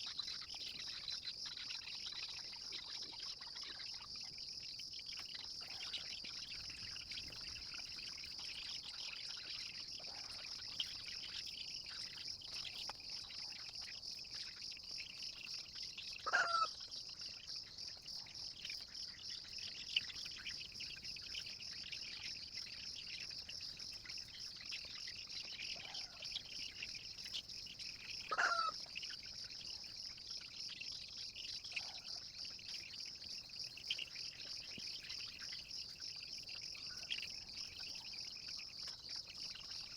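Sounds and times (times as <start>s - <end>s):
crickets trilling: 0.0s - 39.9s
chicken calls falling in pitch: 16.2s - 16.8s, 28.3s - 28.8s.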